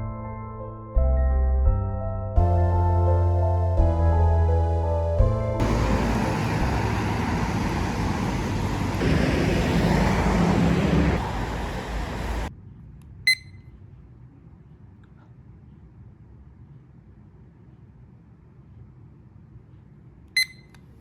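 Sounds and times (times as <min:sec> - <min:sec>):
loud low rumbling background noise: 0:02.6 - 0:13.0
short high beep: 0:13.3 - 0:13.6, 0:20.4 - 0:20.8.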